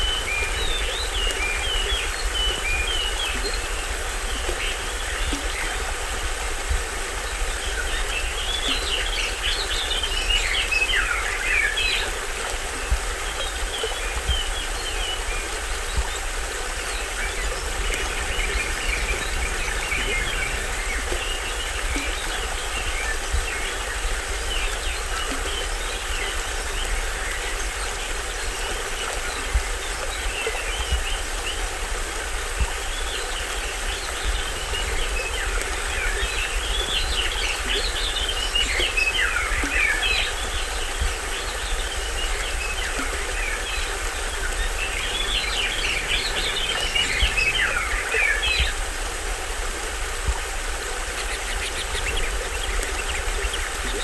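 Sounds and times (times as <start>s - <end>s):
stream waterfall rushing: 0.0s - 54.0s
birds chirping: 13.8s - 27.4s, 33.3s - 48.9s.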